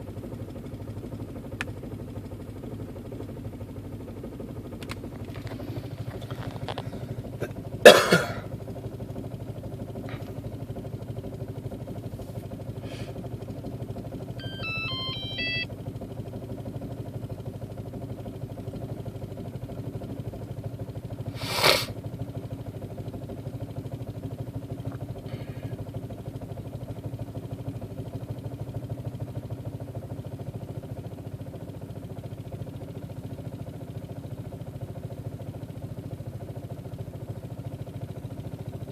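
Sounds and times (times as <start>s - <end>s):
engine idling rough: 0.0s - 38.9s
beeping tones: 14.4s - 15.7s.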